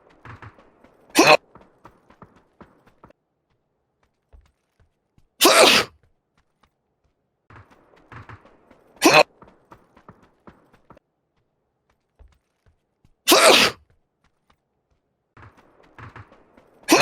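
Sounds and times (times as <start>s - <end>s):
person sneezing: 1.2s - 1.4s, 5.4s - 5.9s, 9.0s - 9.2s, 13.3s - 13.8s.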